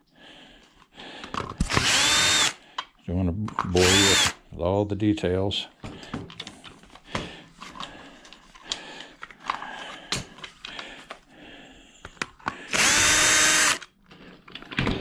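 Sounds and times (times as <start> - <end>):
power drill whirring: 1.6 - 2.6, 3.7 - 4.4, 12.7 - 13.9.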